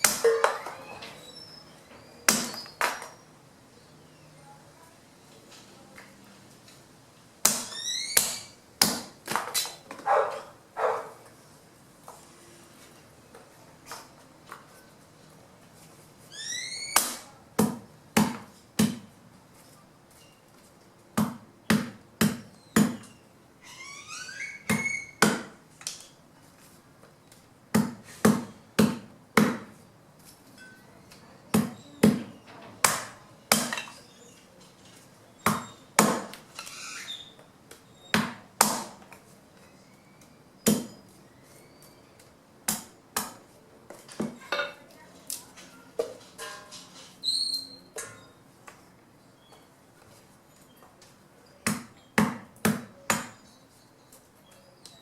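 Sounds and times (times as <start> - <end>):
chopping wood strikes: 2.3 - 3.0, 7.4 - 9.6, 17.0 - 19.1, 21.2 - 23.1, 24.7 - 25.5, 27.7 - 29.8, 31.5 - 33.8, 35.5 - 36.4, 38.2 - 39.0, 40.7 - 41.0.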